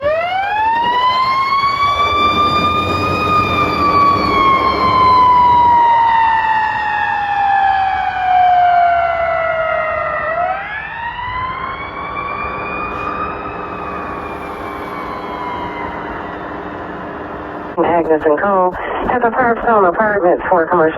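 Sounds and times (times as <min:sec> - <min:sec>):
fire truck siren wailing: 0:00.0 - 0:18.5.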